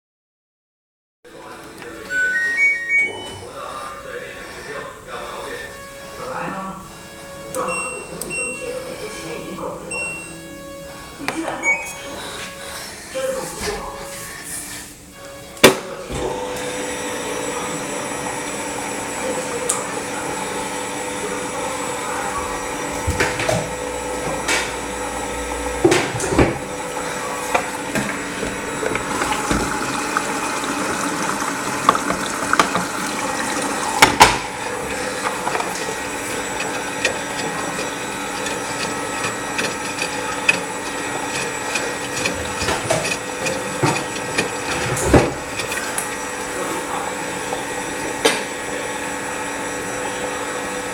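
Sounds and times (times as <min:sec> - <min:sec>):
washing machine motor hum: 0:16.2 - 0:50.9
washing machine clunks and knocks: 0:23.0 - 0:24.8, 0:25.8 - 0:26.8, 0:27.9 - 0:35.0, 0:42.2 - 0:45.8
water sounds: 0:27.7 - 0:46.9.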